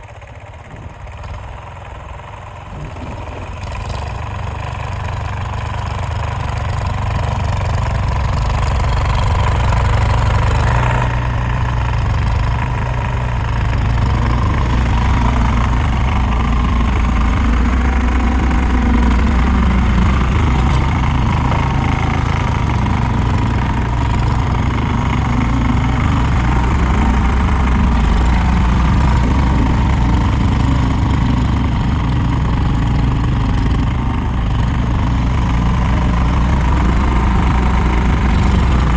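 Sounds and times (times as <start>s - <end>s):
tractor engine running: 0.0s - 38.9s
thin steady whine: 11.3s - 38.9s.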